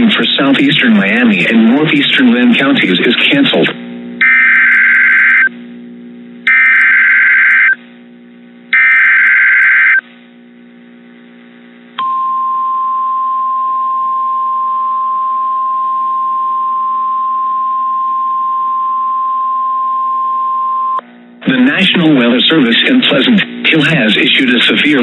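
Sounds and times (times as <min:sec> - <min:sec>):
steady attention tone: 0:00.4 - 0:07.8.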